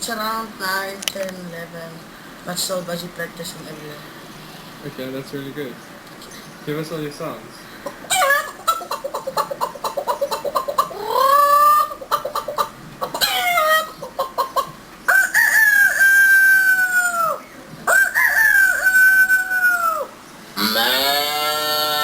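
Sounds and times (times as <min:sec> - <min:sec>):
person imitating clucking chicken: 0:07.8 - 0:22.0
person imitating rooster crowing: 0:11.0 - 0:11.9, 0:18.0 - 0:22.0.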